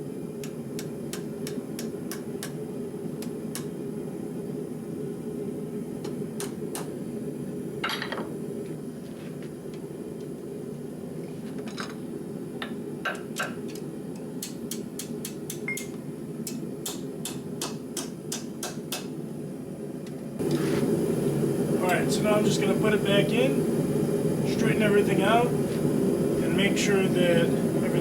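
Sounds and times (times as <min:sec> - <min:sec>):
forge running: 0:20.3 - 0:28.0.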